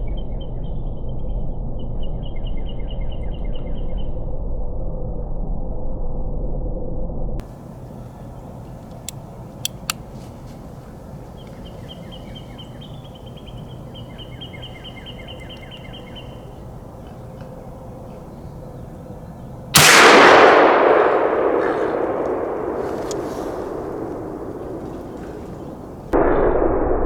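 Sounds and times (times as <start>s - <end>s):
bird calling high notes: 7.5s - 26.1s
loud handgun shot ringing out: 19.7s - 26.2s.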